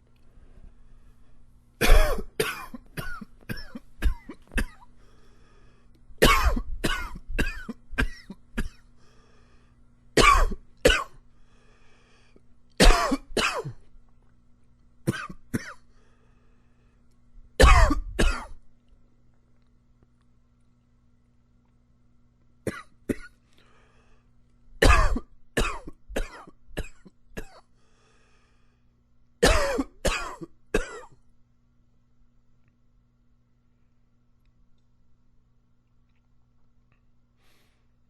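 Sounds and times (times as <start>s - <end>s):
man coughing: 1.8s - 4.9s, 6.2s - 8.8s, 10.2s - 11.2s, 12.8s - 13.8s, 15.1s - 15.8s, 17.6s - 18.6s, 24.8s - 27.6s, 29.4s - 31.2s.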